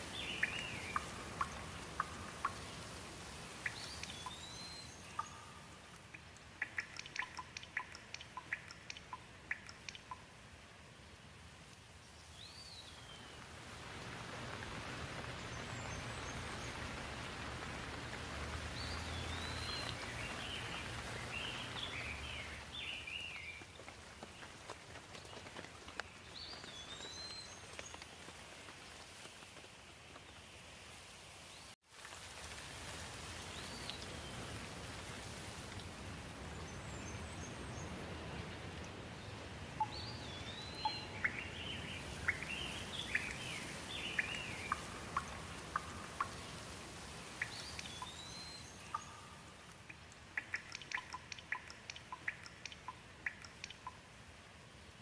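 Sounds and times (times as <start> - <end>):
bird chirping: 0.0 - 10.3, 18.7 - 23.8, 39.2 - 46.7, 47.4 - 54.0
water dripping ticks: 0.0 - 10.6, 11.7 - 30.5, 32.0 - 55.0
steady rain: 0.0 - 55.0.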